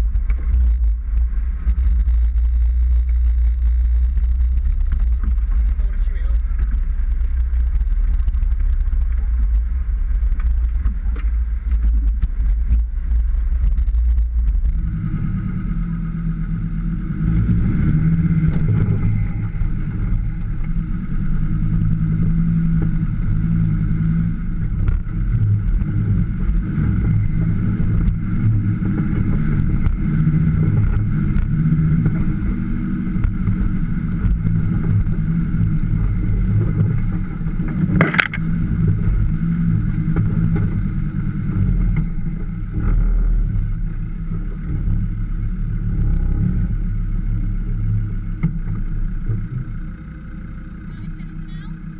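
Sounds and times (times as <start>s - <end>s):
engine rumbling: 0.0s - 51.9s.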